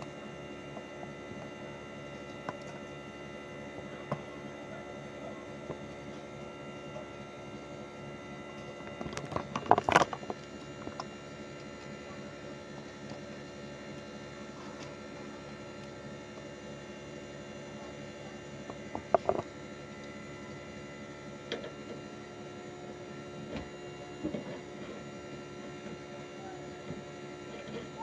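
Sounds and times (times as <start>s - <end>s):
air conditioner humming: 0.0s - 28.0s.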